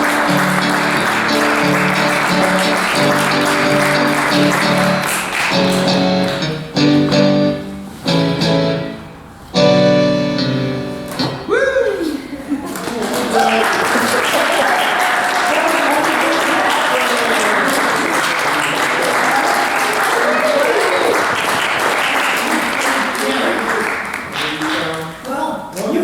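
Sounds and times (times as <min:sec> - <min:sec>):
audience applauding: 0:00.0 - 0:07.2, 0:11.0 - 0:25.4
instrumental music sustained chords: 0:00.0 - 0:11.6.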